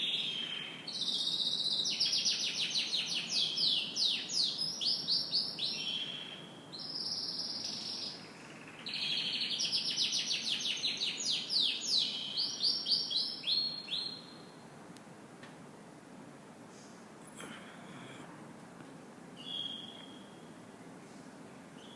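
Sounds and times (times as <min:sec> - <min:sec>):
canary singing trills: 0:00.0 - 0:14.6, 0:19.4 - 0:20.6.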